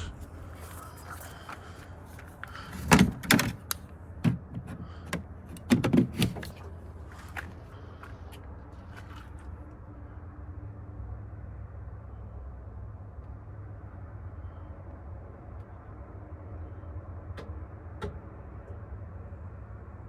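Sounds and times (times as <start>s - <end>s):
steady low hum: 0.0s - 20.0s
loud knocks and clunks: 2.8s - 6.6s.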